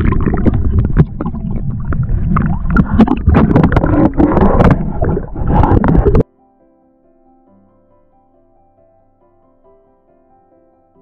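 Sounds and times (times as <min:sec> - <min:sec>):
water sloshing and gurgling: 0:00.0 - 0:06.2.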